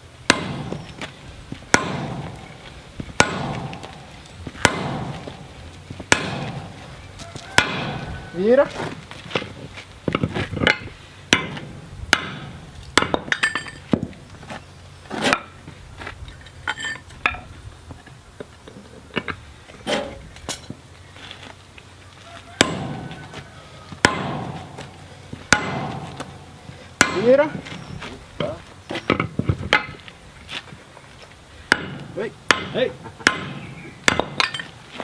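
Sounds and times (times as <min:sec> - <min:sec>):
hammer striking metal on anvil: 0:00.3 - 0:00.9, 0:01.7 - 0:02.6, 0:03.2 - 0:05.4, 0:06.1 - 0:06.8, 0:07.6 - 0:08.1, 0:10.7 - 0:13.8, 0:22.6 - 0:23.0, 0:24.0 - 0:24.9, 0:25.5 - 0:27.6, 0:31.7 - 0:34.7.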